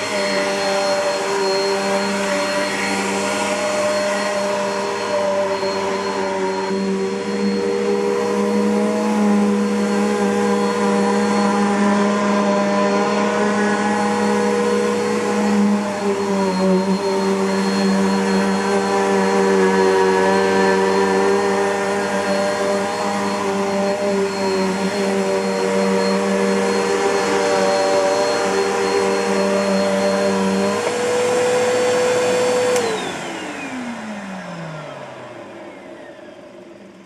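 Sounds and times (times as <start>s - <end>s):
vacuum cleaner running: 0.0s - 37.0s.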